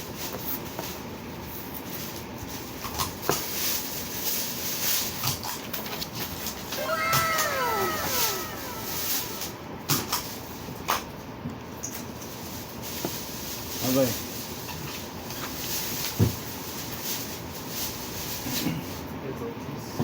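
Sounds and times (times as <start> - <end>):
cat meowing: 6.8 - 9.6.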